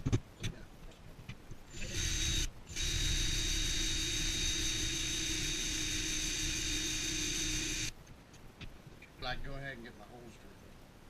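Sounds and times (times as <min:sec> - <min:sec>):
electric drill drilling: 0:01.7 - 0:07.9.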